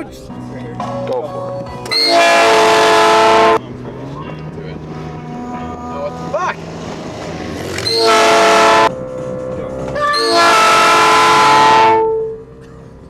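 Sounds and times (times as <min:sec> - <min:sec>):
train horn blasts: 0:01.9 - 0:03.6, 0:07.8 - 0:09.0, 0:09.9 - 0:12.6.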